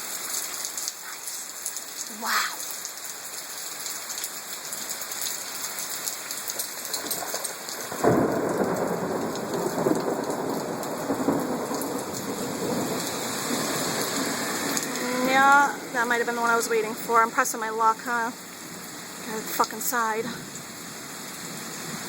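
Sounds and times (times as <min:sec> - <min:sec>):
steady rain falling: 0:00.0 - 0:22.0
thunder rumbling: 0:06.9 - 0:17.7.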